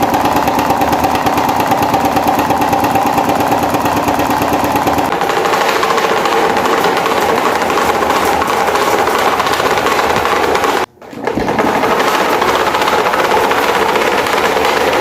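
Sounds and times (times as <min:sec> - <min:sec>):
electric fan rattling: 0:00.0 - 0:15.0.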